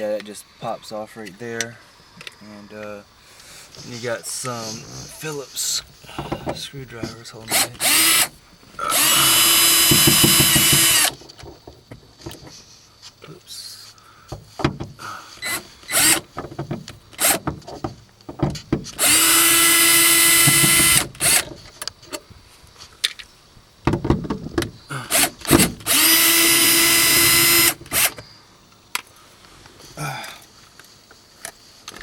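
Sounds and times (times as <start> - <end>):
power drill motor running: 7.5 - 11.2, 15.4 - 16.2, 17.2 - 17.4, 19.0 - 21.5, 25.1 - 28.2.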